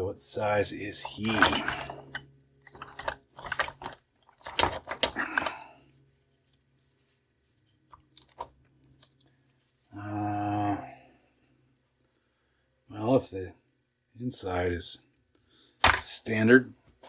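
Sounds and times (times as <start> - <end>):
metal tools clinking: 1.0 - 5.6.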